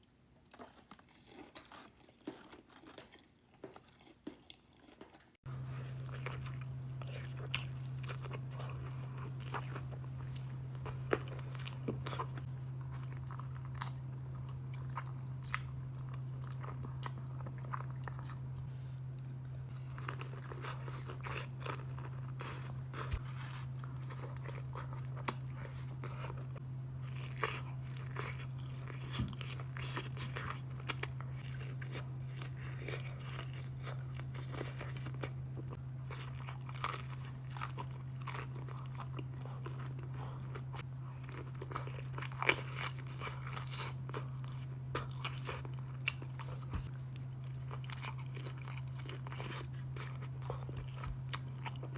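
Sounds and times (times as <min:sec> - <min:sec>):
person chewing crunchy food: 0:00.0 - 0:51.9
steady low hum: 0:00.0 - 0:51.9.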